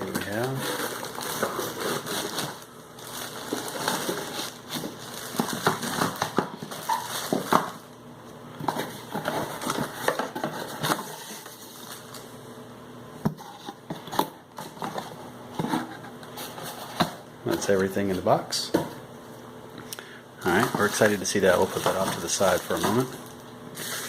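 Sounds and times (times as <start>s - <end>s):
cardboard rustling and crinkling: 0.0s - 7.8s, 8.6s - 12.2s, 20.5s - 24.0s.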